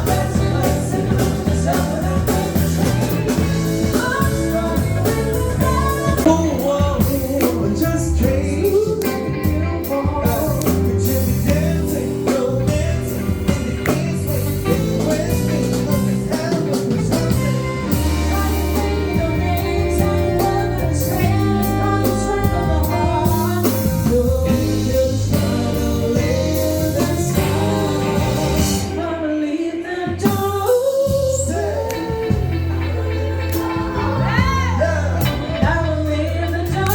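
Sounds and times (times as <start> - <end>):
band with bass and drums: 0.0 - 36.9
person singing: 0.0 - 36.9.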